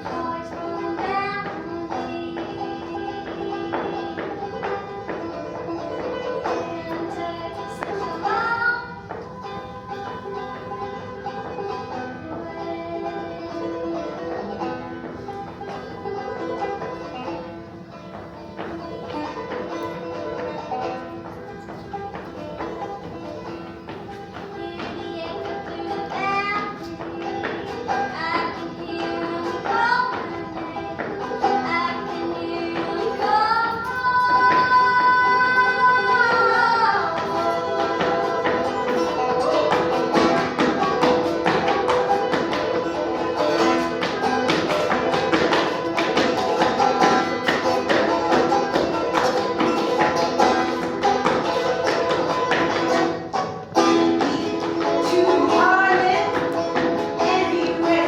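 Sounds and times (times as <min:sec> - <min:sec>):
dance steps tapping on wood: 0:00.0 - 0:08.4, 0:13.5 - 0:35.2, 0:36.1 - 0:58.0
banjo picking: 0:00.0 - 0:58.0.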